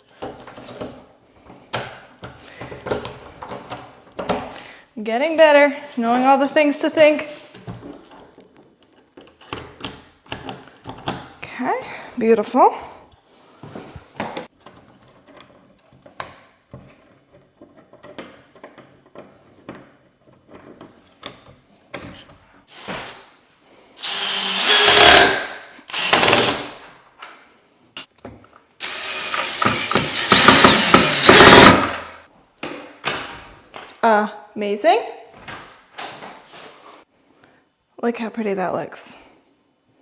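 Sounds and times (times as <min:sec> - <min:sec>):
power drill motor: 0:22.7 - 0:23.2, 0:24.0 - 0:26.8, 0:28.8 - 0:32.2.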